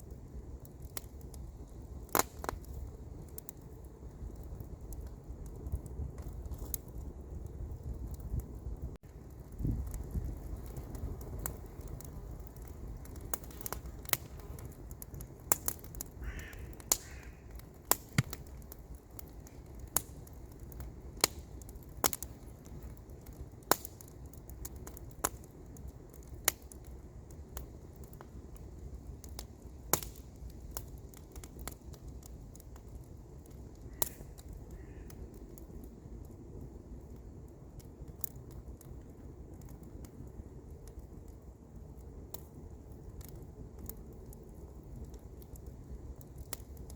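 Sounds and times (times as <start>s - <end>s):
campfire crackling: 0.0s - 46.9s
bird calling: 16.2s - 17.5s.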